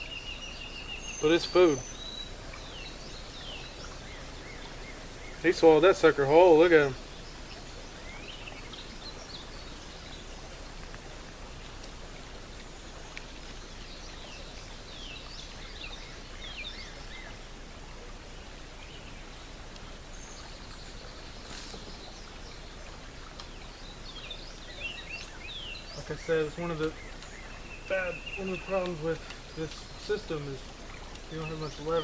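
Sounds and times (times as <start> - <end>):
bird chirps: 0.0 - 10.3, 23.6 - 32.0
steady background hiss: 0.0 - 32.0.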